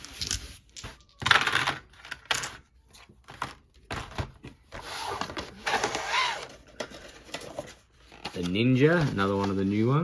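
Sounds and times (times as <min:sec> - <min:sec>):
cardboard boxes rustling: 0:03.9 - 0:10.0.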